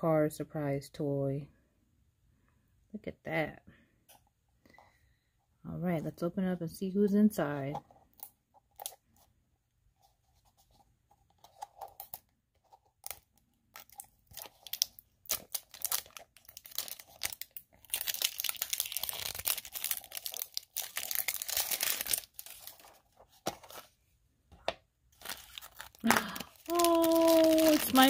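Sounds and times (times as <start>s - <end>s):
wrapper crinkling and rustling: 13.0s - 23.9s, 25.1s - 28.0s.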